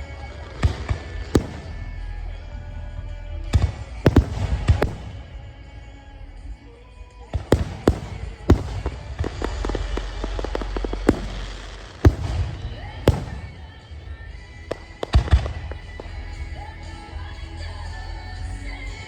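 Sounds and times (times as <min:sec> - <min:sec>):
firework booms: 0:00.0 - 0:02.4, 0:03.4 - 0:05.6, 0:07.3 - 0:16.5
firework crackles: 0:00.0 - 0:19.0
music: 0:00.0 - 0:19.0.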